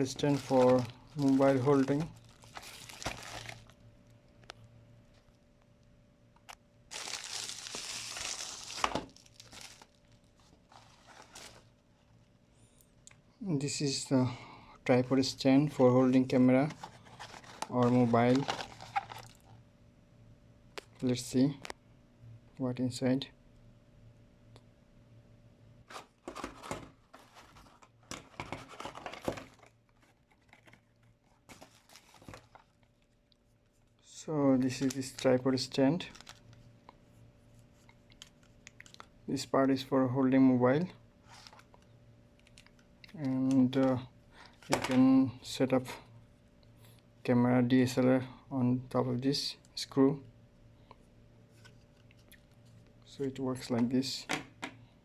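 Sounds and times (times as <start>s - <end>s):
packaging crinkling: 0.0s - 3.8s, 6.9s - 11.8s, 16.7s - 19.6s, 25.9s - 33.1s, 36.0s - 36.6s.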